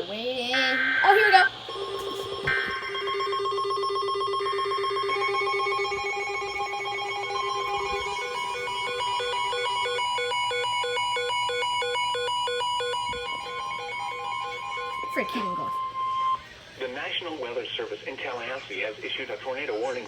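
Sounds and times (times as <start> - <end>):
fast pulsing beep: 0.5 - 16.5
steady electronic alert tones: 0.5 - 16.5.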